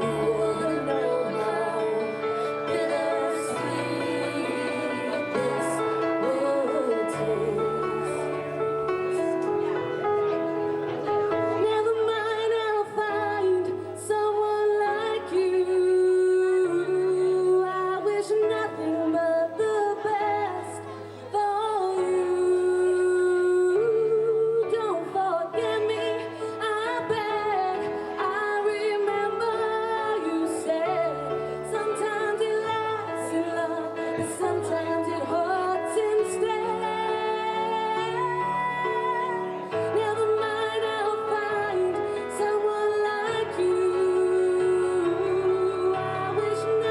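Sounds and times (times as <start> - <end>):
instrumental accompaniment: 0.0 - 17.4
person singing live: 0.0 - 46.9.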